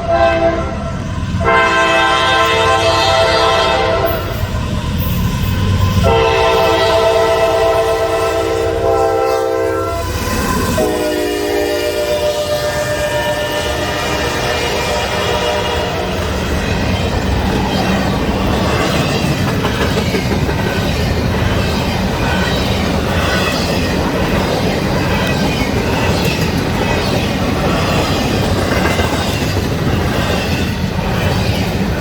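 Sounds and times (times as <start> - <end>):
railcars rumbling: 0.0 - 32.0
wheels squealing on rails: 2.8 - 32.0
train wheel clatter: 12.6 - 32.0.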